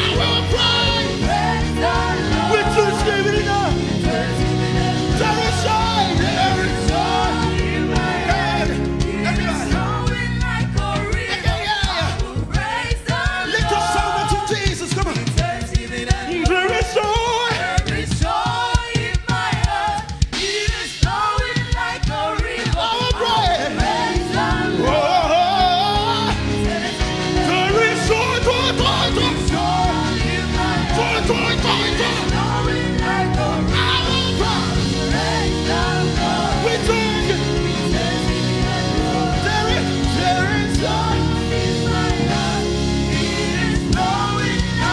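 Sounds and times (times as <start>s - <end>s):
held low chords: 0.0s - 12.6s, 23.5s - 44.9s
beat: 0.0s - 44.9s
voices singing gospel: 0.0s - 44.9s.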